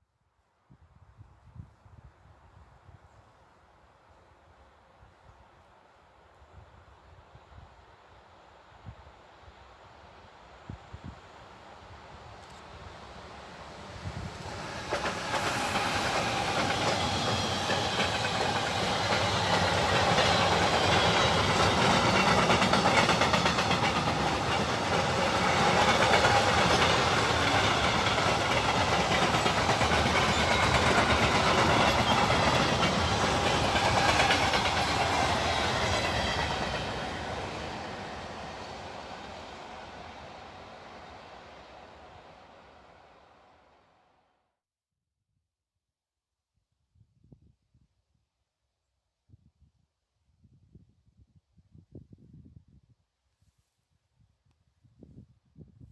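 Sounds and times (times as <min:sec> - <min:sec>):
freight train wheels clattering: 0:14.3 - 0:42.2.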